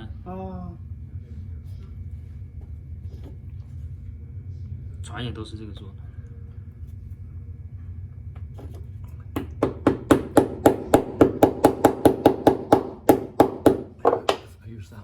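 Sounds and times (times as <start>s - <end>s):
hammer tapping wooden plug: 9.4s - 14.5s.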